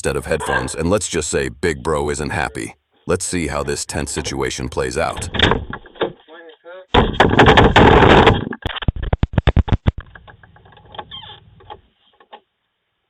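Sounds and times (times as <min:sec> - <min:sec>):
door banging: 0:04.0 - 0:06.2, 0:06.9 - 0:08.6.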